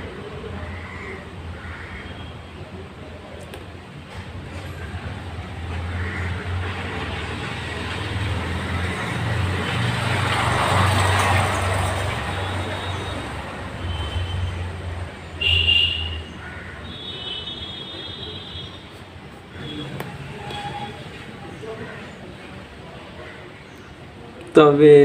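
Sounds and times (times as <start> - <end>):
vehicle passing: 4.2 - 15.4.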